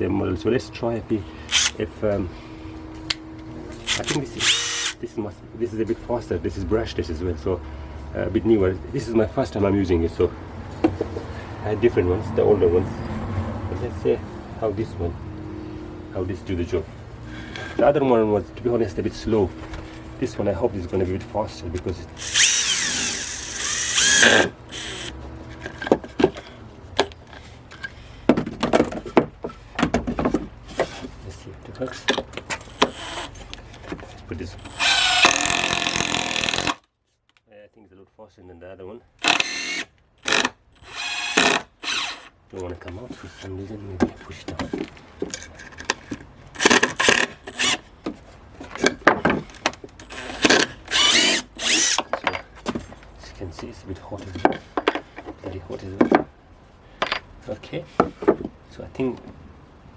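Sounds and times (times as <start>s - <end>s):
impact driver motor whine: 1.5s - 1.8s, 3.1s - 5.0s, 22.2s - 25.2s, 34.7s - 36.8s.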